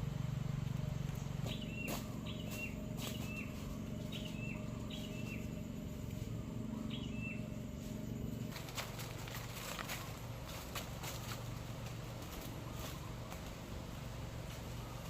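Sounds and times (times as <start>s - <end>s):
steady low hum: 0.0s - 15.0s
bird call: 1.2s - 5.6s, 6.6s - 7.7s
clicks and rustles: 8.4s - 13.6s.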